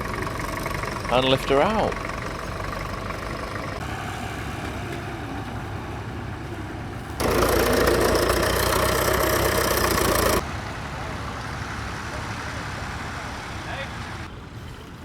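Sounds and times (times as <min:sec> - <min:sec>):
loud harsh engine: 0:00.0 - 0:06.0, 0:07.2 - 0:13.6
tractor engine running: 0:00.0 - 0:11.8.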